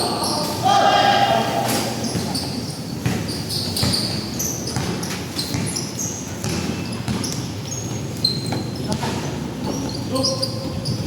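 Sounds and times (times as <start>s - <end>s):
sneakers squeaking: 0.0s - 11.0s
basketball bouncing on floor: 2.0s - 9.2s.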